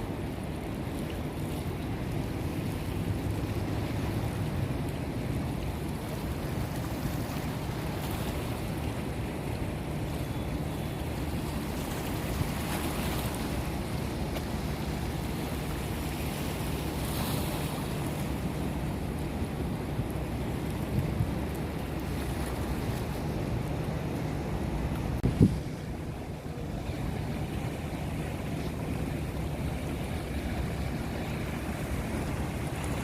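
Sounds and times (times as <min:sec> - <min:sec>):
rushing water: 0:00.0 - 0:33.0
wind buffeting microphone: 0:24.3 - 0:28.5.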